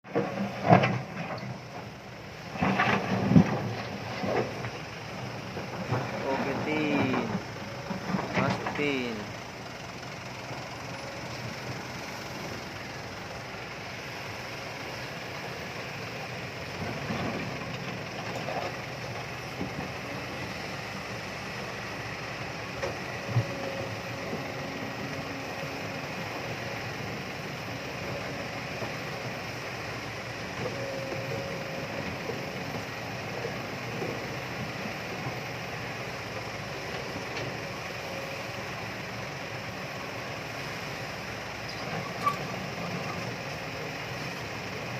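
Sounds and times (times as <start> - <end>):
excavator diesel engine drone: 0.0 - 44.9.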